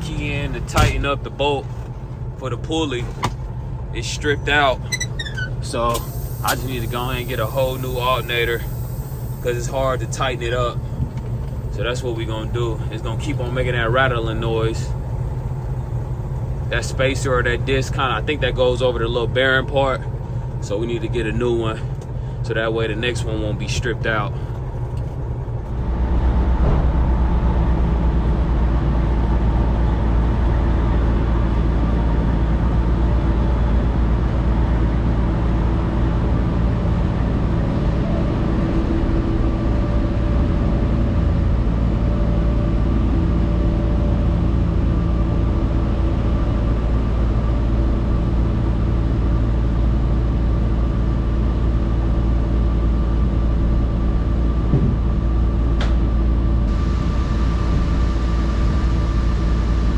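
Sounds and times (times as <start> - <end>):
diesel truck engine running: 0.0 - 59.9.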